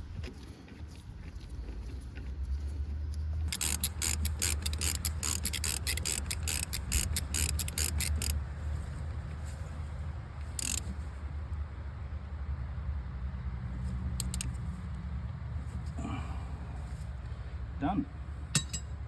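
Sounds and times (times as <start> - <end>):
ratchet wrench clicking: 3.5 - 8.4, 10.6 - 10.9, 14.2 - 14.6.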